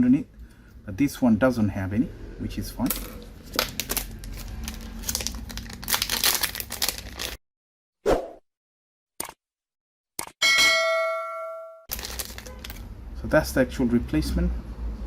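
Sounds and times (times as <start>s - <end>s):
plastic wrapping crinkling: 2.8s - 7.4s, 11.9s - 12.9s.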